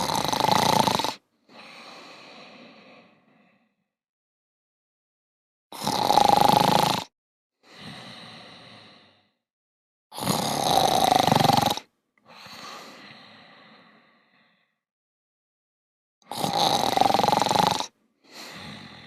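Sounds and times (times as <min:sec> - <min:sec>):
person snoring: 0:00.0 - 0:03.8, 0:05.7 - 0:09.4, 0:10.1 - 0:14.8, 0:16.2 - 0:19.0.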